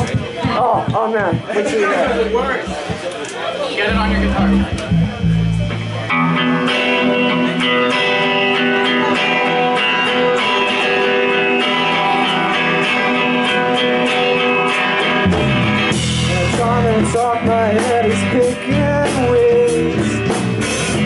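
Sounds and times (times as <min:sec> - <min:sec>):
low bass notes: 0:00.0 - 0:03.1, 0:03.9 - 0:08.9, 0:15.1 - 0:21.0
electric guitar strumming chords: 0:00.0 - 0:21.0.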